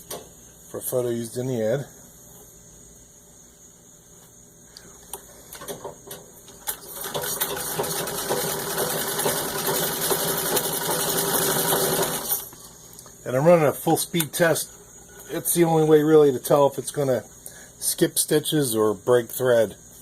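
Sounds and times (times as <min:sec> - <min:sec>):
sewing machine clicks: 0:06.6 - 0:12.4
sewing machine rattling: 0:06.6 - 0:12.5.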